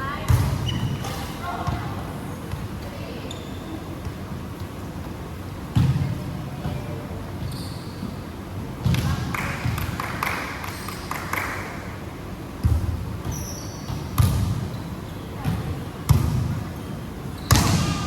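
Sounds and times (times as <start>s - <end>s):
shoe squeaks: 0.6s - 1.4s, 3.2s - 3.9s, 7.4s - 8.3s, 13.3s - 15.3s
basketball bouncing: 12.6s - 14.8s, 15.4s - 16.6s, 17.4s - 18.0s.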